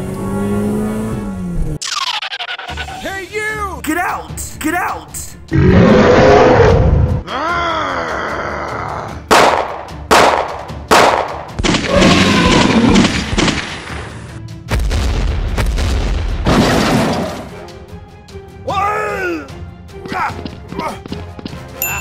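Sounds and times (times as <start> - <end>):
music: 2.6 - 22.0
sharp bangs: 9.3 - 14.0.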